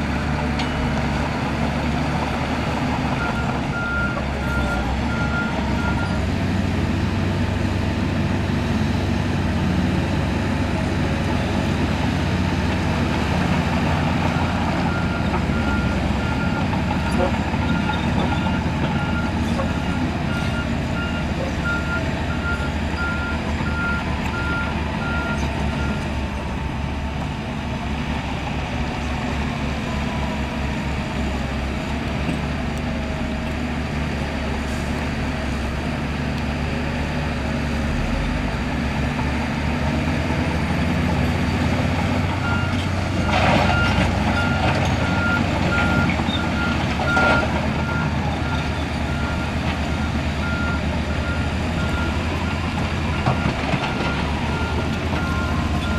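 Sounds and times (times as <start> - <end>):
diesel engine under load: 0.0 - 55.9
reversing alarm beeping: 42.4 - 55.9.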